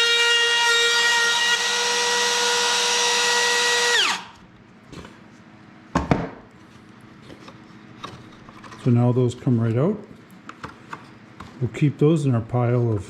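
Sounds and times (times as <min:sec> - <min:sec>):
router whining and spinning down: 0:00.0 - 0:04.4.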